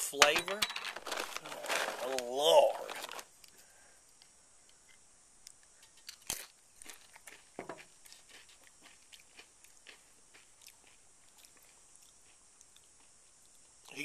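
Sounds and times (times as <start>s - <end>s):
person chewing crunchy food: 4.7s - 14.0s.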